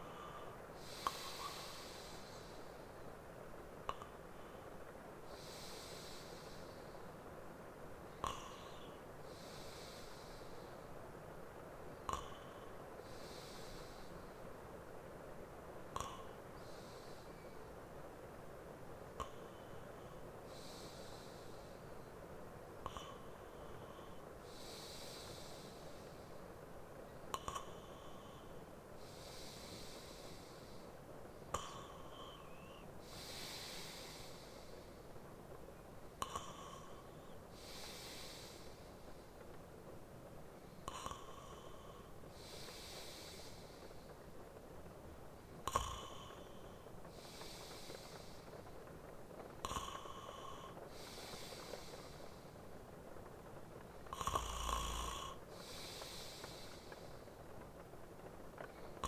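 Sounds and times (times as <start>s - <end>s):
man breathing slowly: 0.0s - 59.0s
soft hiss of rain: 0.0s - 59.0s
man snoring: 8.2s - 8.9s, 45.7s - 46.6s, 49.6s - 52.3s, 54.1s - 57.0s.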